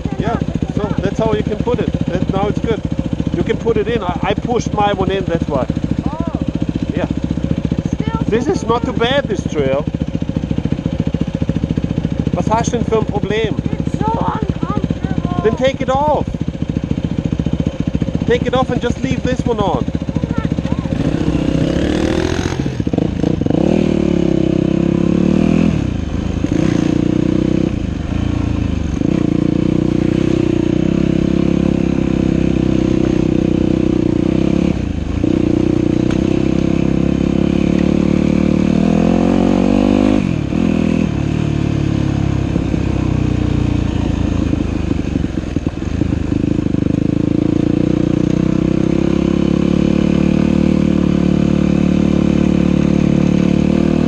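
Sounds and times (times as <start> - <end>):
dirt bike engine: 0.0 - 54.0.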